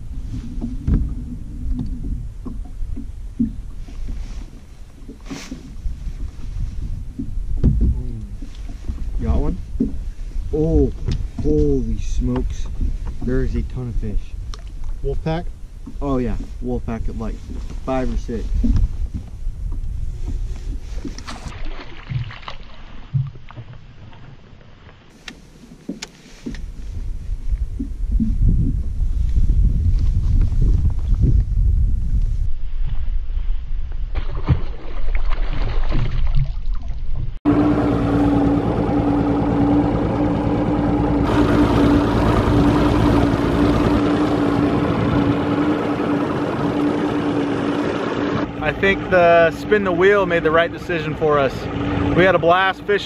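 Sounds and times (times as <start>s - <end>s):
engine running steadily: 0.0s - 21.5s, 37.5s - 53.0s
wind rumbling on microphone: 0.0s - 24.6s, 25.5s - 53.0s
water against boat hull: 0.0s - 53.0s.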